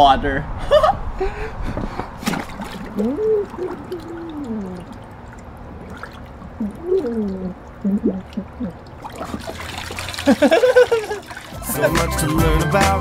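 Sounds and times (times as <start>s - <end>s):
water trickling: 2.2s - 12.4s
man's muffled voice underwater: 3.0s - 5.0s.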